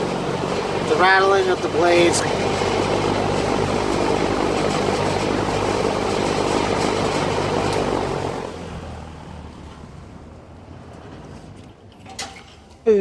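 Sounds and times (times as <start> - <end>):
fan blades rattling: 0.0 - 8.6
electric fan running: 0.0 - 9.2.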